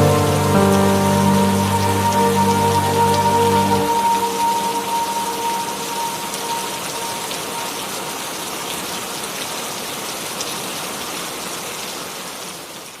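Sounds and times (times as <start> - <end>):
soft music tone: 0.0 - 8.3
steady rainfall: 0.0 - 13.0.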